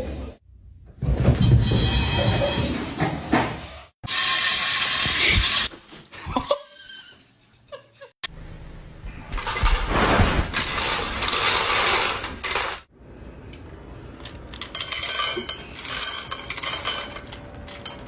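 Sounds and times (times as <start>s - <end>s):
small objects clinking on dishes: 14.2s - 18.0s.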